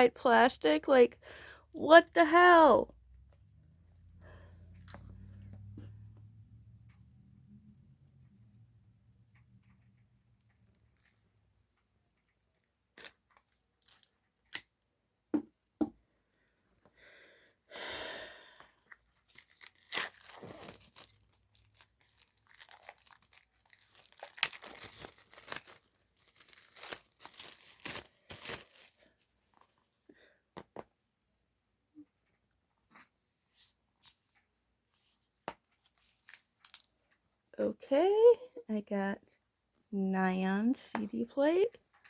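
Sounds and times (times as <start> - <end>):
plastic wrapping crinkling: 12.6 - 14.6, 18.8 - 29.7, 36.0 - 37.1.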